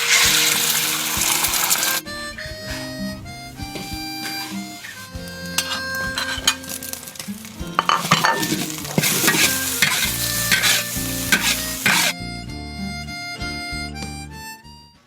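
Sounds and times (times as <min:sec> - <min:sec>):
food sizzling in a wok: 0:00.0 - 0:02.0, 0:05.6 - 0:12.2
metal spatula scraping a wok: 0:00.0 - 0:02.0, 0:04.4 - 0:12.2.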